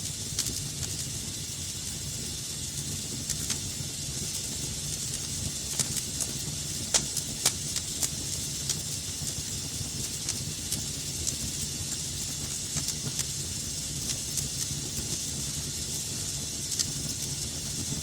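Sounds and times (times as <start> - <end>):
fire crackles and pops: 0.0 - 18.0
wood fire rumble and hiss: 0.0 - 18.0.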